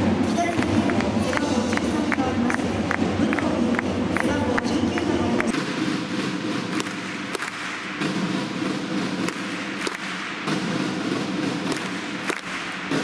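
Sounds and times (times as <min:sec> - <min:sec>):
crowd hum: 0:00.0 - 0:06.7
sharp beats: 0:00.0 - 0:13.0.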